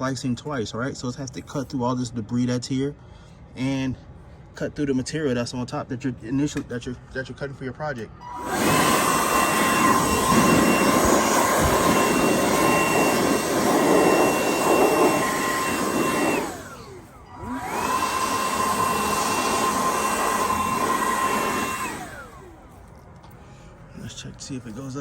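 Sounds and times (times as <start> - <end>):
cordless blower whining: 8.2 - 22.9.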